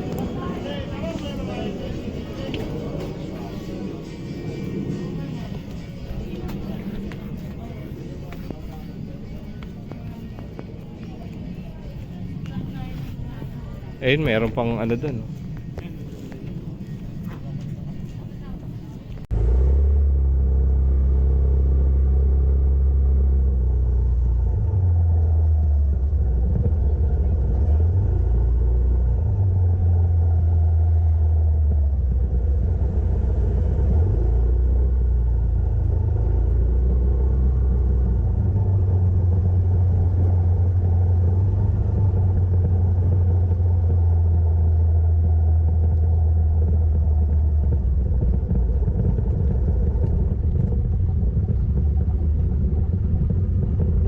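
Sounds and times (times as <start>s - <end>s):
motorcycle engine running: 19.1s - 54.0s.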